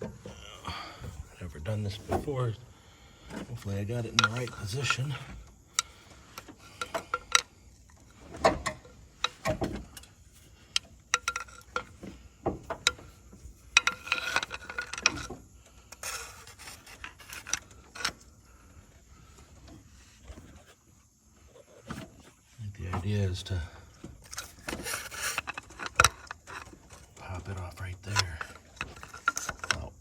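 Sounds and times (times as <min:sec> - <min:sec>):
metal parts clinking and scraping: 0:03.3 - 0:18.3, 0:24.2 - 0:30.0.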